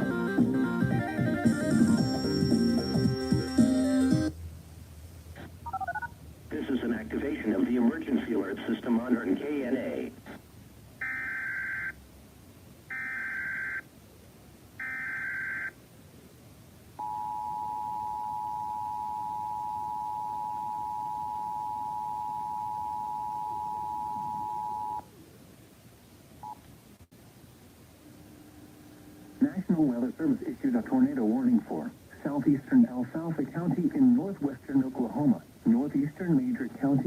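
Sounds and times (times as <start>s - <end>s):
two-tone attention signal: 17.0s - 25.0s.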